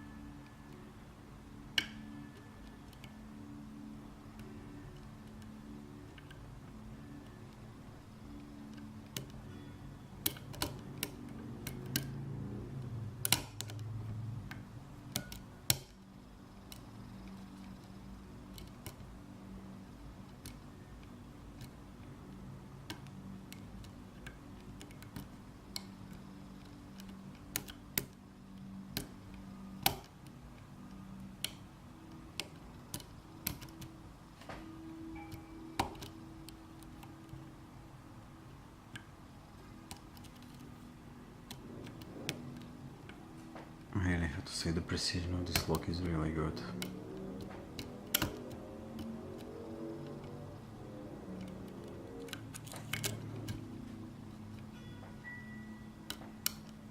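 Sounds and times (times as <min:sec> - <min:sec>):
low hum: 0:00.0 - 0:56.9.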